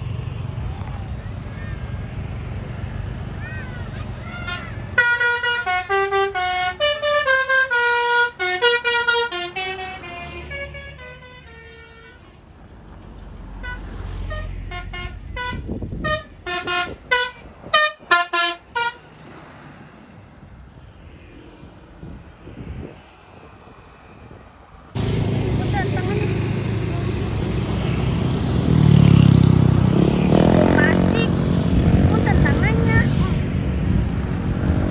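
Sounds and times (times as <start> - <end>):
multi-tone bus horn melody: 4.4 - 12.4, 13.6 - 19.2.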